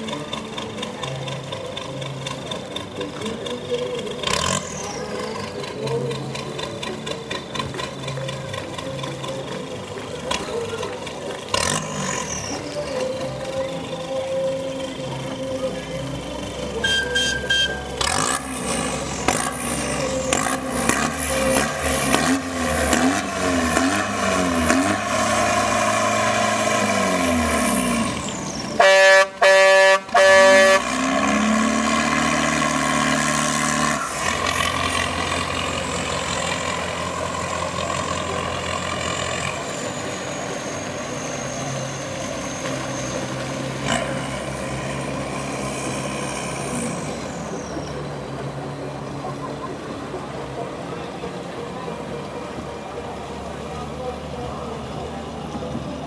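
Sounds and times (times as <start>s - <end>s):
tugboat engines running: 0.0s - 56.0s
horn blasts: 16.8s - 32.0s.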